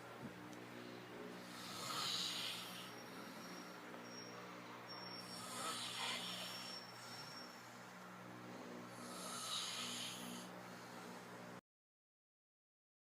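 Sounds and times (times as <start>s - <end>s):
person snoring: 1.4s - 3.4s, 5.3s - 7.3s, 8.9s - 10.5s.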